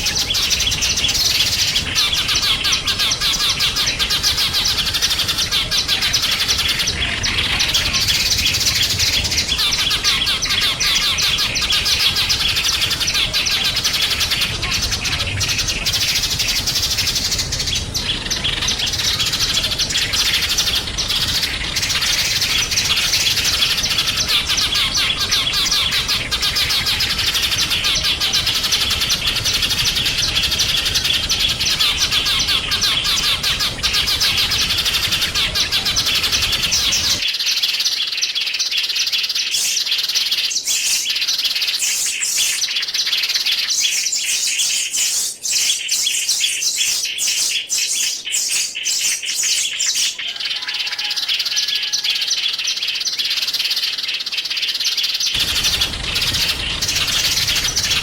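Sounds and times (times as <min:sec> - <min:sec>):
songbirds chirping and twittering: 0:00.0 - 0:58.0
low background rumble: 0:00.5 - 0:37.2, 0:55.4 - 0:58.0.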